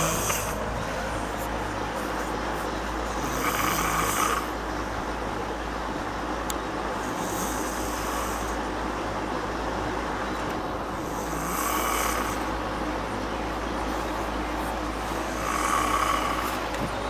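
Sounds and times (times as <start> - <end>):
woman snoring: 0.0 - 0.6, 3.1 - 4.5, 11.0 - 12.5, 15.3 - 16.6
fan hiss and hum: 0.0 - 17.0.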